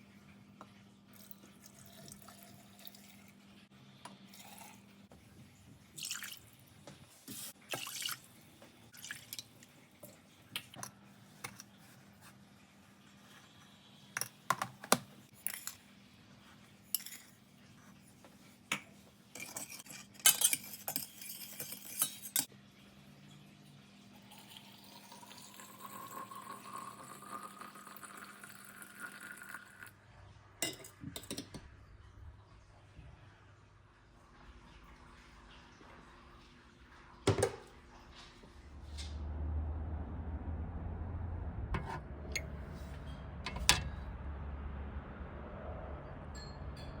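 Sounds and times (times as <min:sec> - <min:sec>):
liquid pouring into glass jar: 0:01.2 - 0:03.2, 0:06.0 - 0:06.5, 0:24.2 - 0:29.9
glass and utensils clinking: 0:19.4 - 0:22.5.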